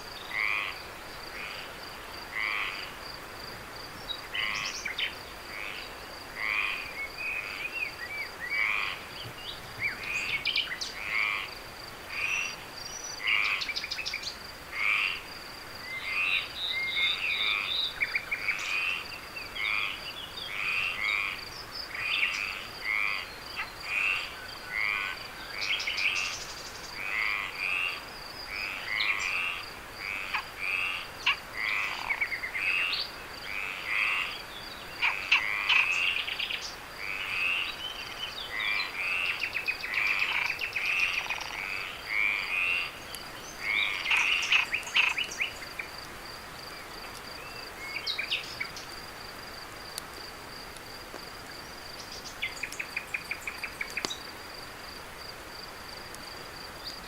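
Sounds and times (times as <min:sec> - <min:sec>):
frogs calling: 0:00.1 - 0:57.0.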